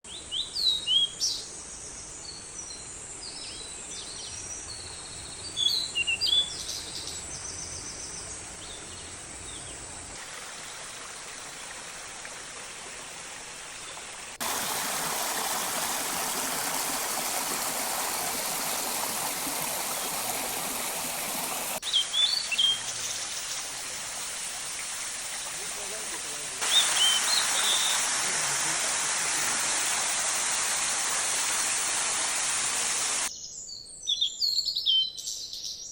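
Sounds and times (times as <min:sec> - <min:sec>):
small birds chirping: 0:00.1 - 0:09.9, 0:13.8 - 0:23.8, 0:24.6 - 0:35.9
waterfall rushing: 0:14.4 - 0:33.3.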